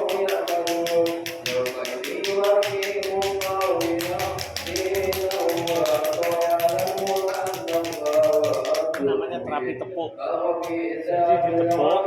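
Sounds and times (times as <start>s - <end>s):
hand patting on body: 0.0s - 9.0s
melodic quran recitation: 0.0s - 12.0s.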